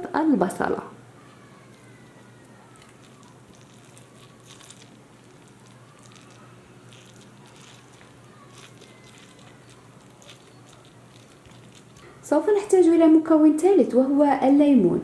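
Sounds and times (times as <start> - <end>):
soft squishes and small crunches: 1.1 - 12.8.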